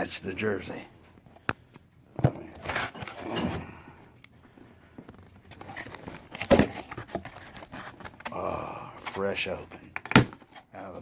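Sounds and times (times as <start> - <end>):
packaging crinkling and tearing: 5.1 - 8.5.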